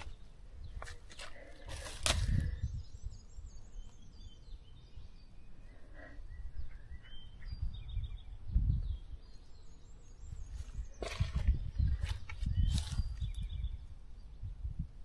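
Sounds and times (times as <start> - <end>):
faint birds chirping: 0.0 - 15.0.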